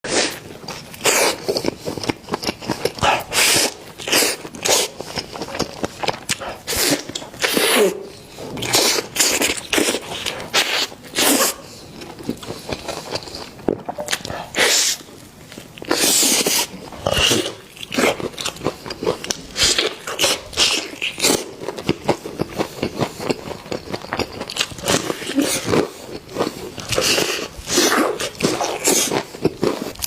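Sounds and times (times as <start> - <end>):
chewing chicken bones: 0.3 - 11.2.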